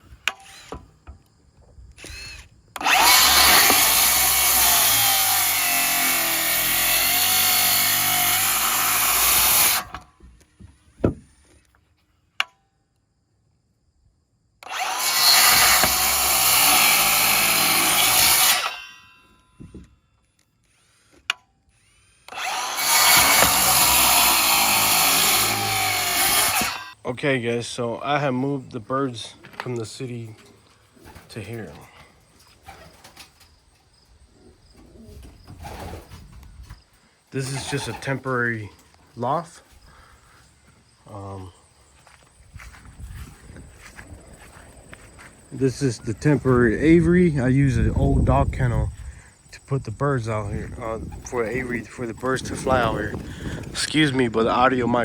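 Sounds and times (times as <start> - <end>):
power tool motor running: 0.3 - 0.9, 2.0 - 10.5, 14.6 - 19.8, 20.7 - 27.0.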